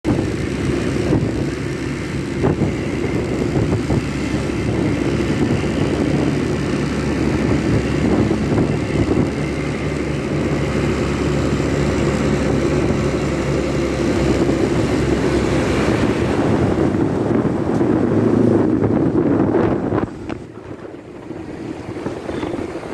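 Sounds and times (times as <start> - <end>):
diesel bus engine idling: 0.0 - 22.9
traffic noise: 0.0 - 22.9.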